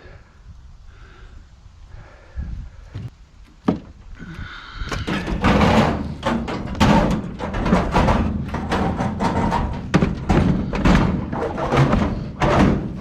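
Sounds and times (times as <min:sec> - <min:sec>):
metal clanks and rattling: 0:04.9 - 0:13.0.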